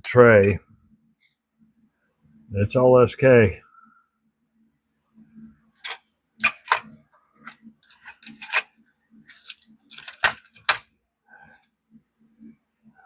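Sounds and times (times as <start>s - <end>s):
metal sockets clinking: 5.8s - 10.8s.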